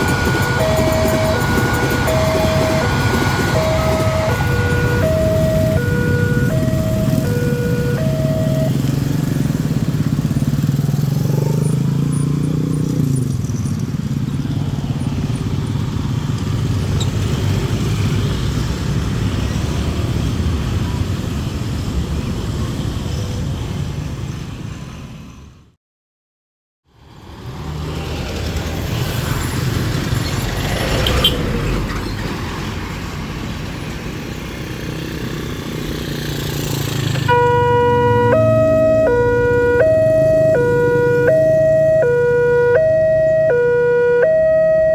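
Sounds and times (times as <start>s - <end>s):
two-tone crossing alarm ringing: 0.0s - 9.5s, 37.2s - 44.9s
passing train rumbling: 0.0s - 25.5s, 27.2s - 44.9s
road traffic rumble: 0.0s - 25.7s, 27.0s - 44.9s.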